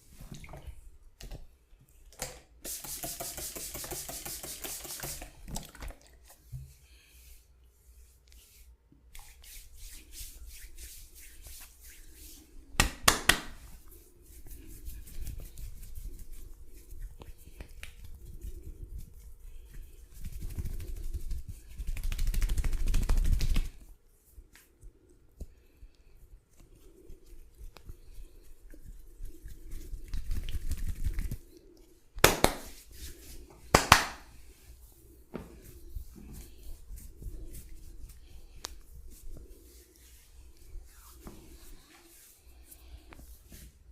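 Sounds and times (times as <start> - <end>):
fast rubbing on skin: 2.7 - 5.3, 9.2 - 12.5, 13.1 - 23.9, 26.5 - 31.6, 36.0 - 42.8
hands tapping skin: 2.7 - 5.3, 12.8 - 13.6, 32.2 - 32.8, 33.7 - 34.3
sharp slaps on skin: 12.8 - 13.6, 32.2 - 32.8, 33.7 - 34.3.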